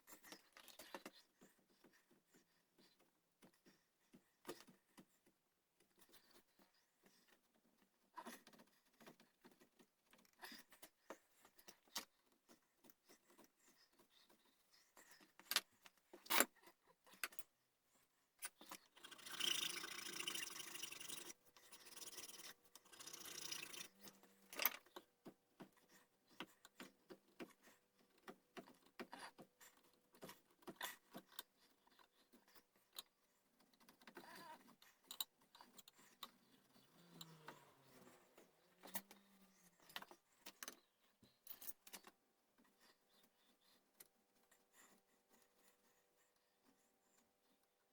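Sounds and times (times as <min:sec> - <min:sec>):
carving tools clicking and tapping: 0:18.4 - 0:32.1
carving tool scraping wood: 0:18.7 - 0:24.7.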